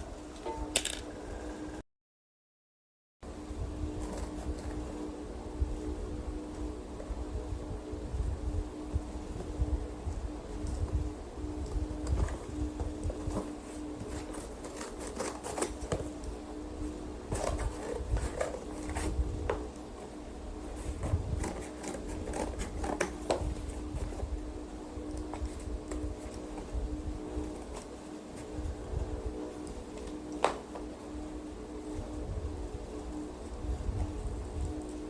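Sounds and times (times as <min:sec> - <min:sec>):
low electrical hum: 0:00.0 - 0:01.8, 0:03.2 - 0:35.0
small objects clicking and knocking: 0:00.6 - 0:01.1.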